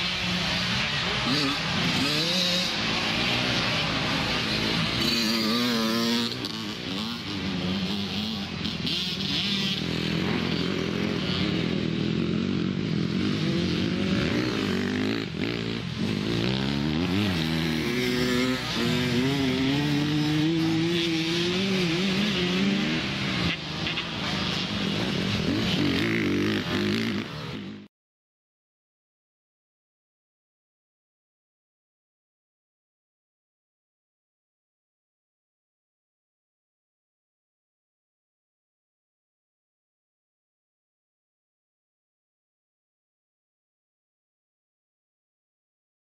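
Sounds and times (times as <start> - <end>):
motocross bike engines revving: 0.0 - 27.9.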